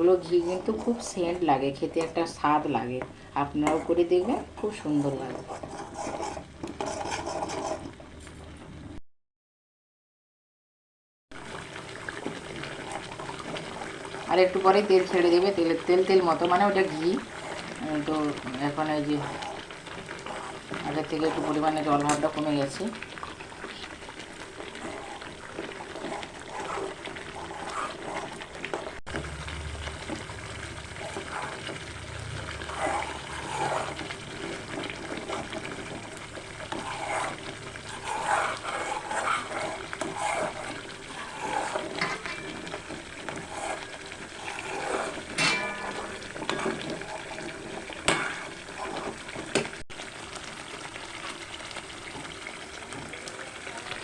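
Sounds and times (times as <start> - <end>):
cream bubbling and sizzling: 0.0 - 9.0, 11.3 - 54.0.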